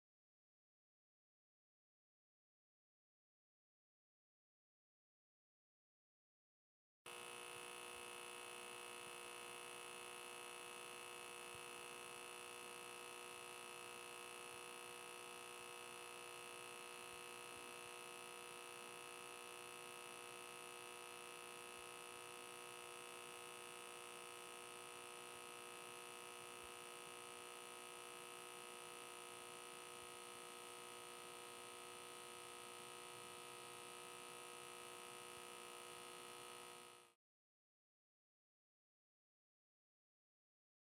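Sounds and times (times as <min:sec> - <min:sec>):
fluorescent light humming: 0:07.1 - 0:37.0.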